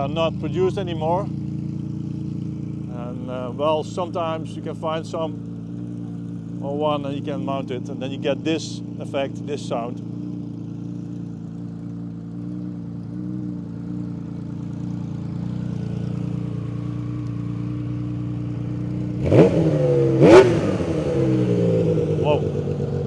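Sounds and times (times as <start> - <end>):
motorcycle engine idling: 0.0 - 23.0.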